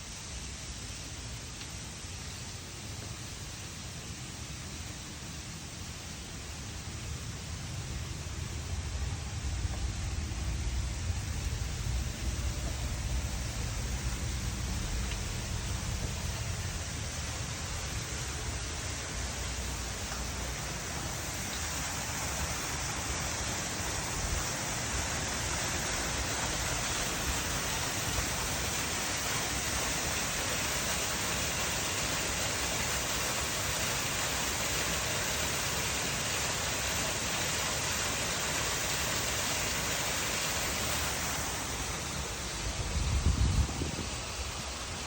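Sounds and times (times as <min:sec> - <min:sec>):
waterfall rushing: 0:05.4 - 0:45.0
low rumble on microphone: 0:42.6 - 0:44.6.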